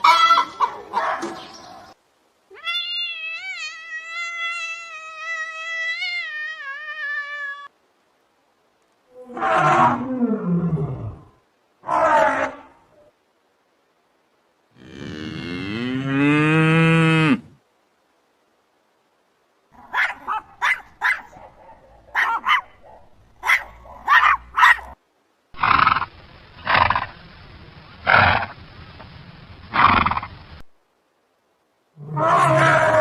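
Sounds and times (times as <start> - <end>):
harsh noisy animal calls: 11.8 - 13.1, 29.7 - 30.4, 32.0 - 33.0
long mooing animal call: 14.8 - 17.6.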